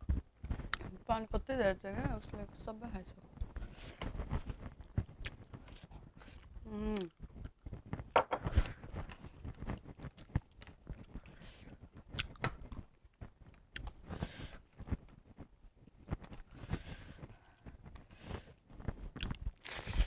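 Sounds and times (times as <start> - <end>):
chewing and mouth sounds: 3.4 - 14.2, 18.9 - 20.0.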